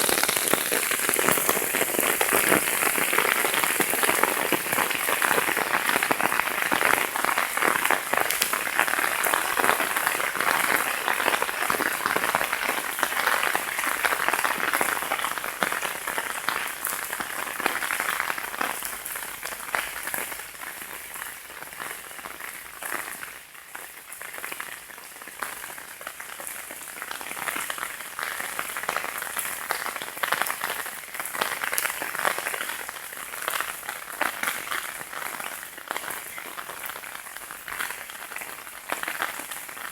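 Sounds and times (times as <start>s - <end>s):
heavy rain: 0.0s - 23.3s.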